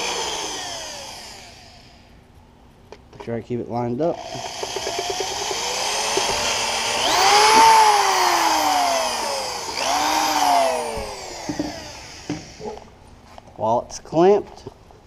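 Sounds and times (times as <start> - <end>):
electric drill whining: 0.0 - 2.1, 4.2 - 12.8.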